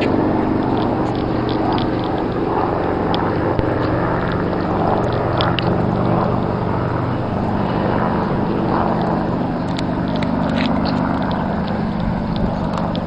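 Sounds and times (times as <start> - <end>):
helicopter engine and rotor drone: 0.0 - 13.0.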